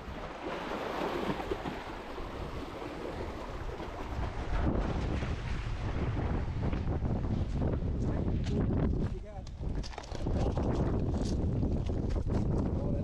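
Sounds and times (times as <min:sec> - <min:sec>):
ocean waves washing: 0:00.0 - 0:08.4
wind on microphone: 0:00.0 - 0:13.0.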